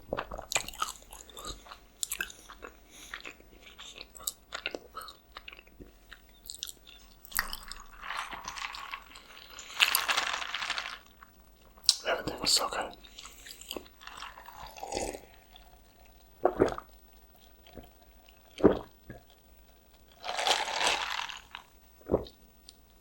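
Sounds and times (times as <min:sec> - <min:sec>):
chewing and biting: 0:00.2 - 0:10.1.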